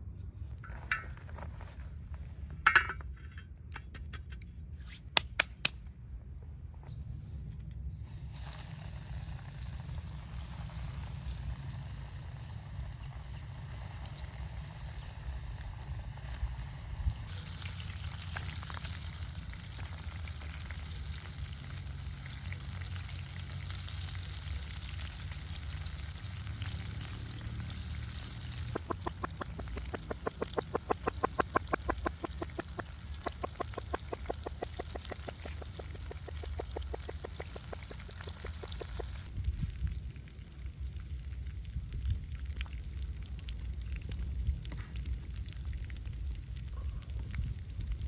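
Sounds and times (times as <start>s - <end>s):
hot oil sizzling: 8.0s - 39.3s
rhythmic tapping: 28.8s - 39.3s.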